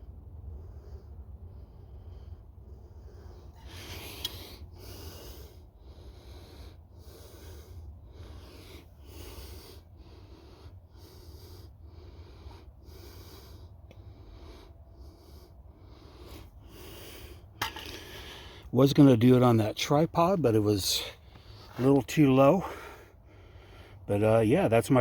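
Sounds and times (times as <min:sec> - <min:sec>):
hand pump wheezing: 0:03.5 - 0:05.4.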